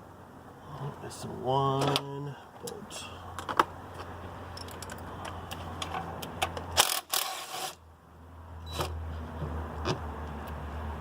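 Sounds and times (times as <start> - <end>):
steady low hum: 0.0 - 6.8.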